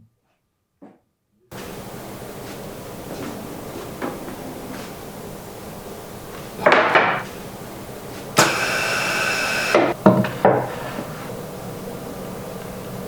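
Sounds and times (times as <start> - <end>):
power tool running: 5.5 - 10.0.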